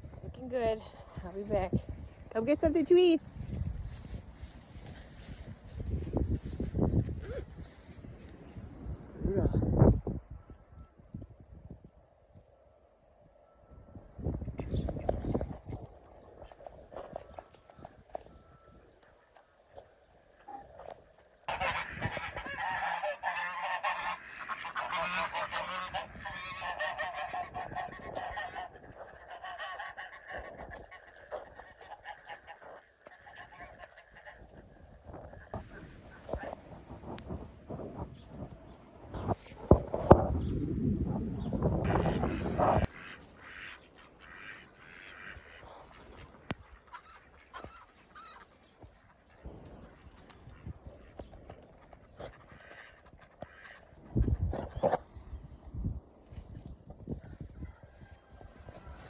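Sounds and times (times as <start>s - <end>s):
geese honking: 17.1s - 36.6s, 41.9s - 54.1s
higher poultry calls: 21.5s - 36.6s, 41.9s - 49.4s.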